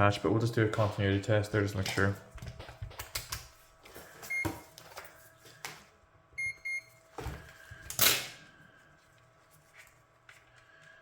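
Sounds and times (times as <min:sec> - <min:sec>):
multimeter beeps: 0:04.3 - 0:04.6, 0:06.4 - 0:07.0.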